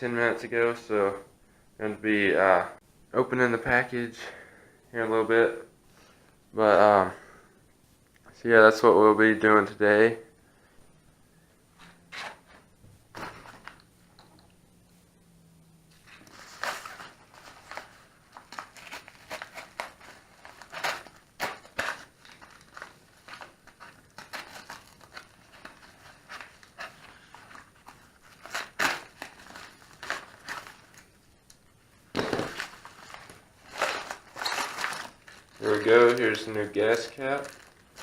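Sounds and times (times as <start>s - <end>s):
packaging crinkling and rustling: 12.2s - 13.9s, 15.9s - 38.0s.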